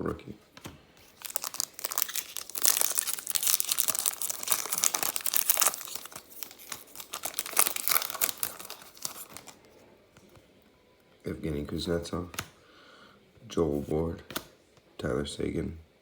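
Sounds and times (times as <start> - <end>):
foil wrapper crinkling and tearing: 1.0 - 9.6.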